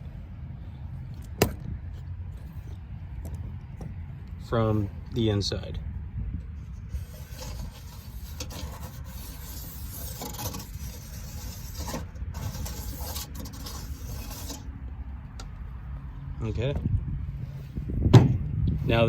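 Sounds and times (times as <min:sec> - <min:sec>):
marker scratching on sheet metal: 0:06.9 - 0:14.7.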